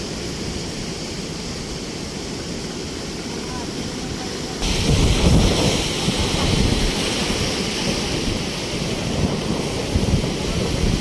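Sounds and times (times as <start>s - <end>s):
surf breaking and hissing: 0.0s - 11.0s
wind buffeting microphone: 3.5s - 11.0s.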